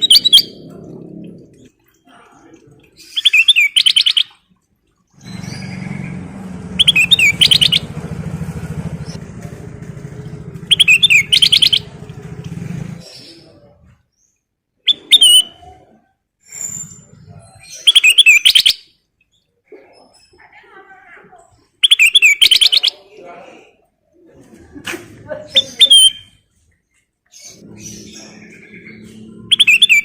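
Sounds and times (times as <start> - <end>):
low engine drone: 0.0 - 2.0, 5.2 - 13.7, 27.6 - 29.8
bulbul warbling: 0.0 - 4.5, 5.1 - 9.2, 10.0 - 13.7, 14.9 - 16.0, 21.8 - 23.2, 27.5 - 30.0.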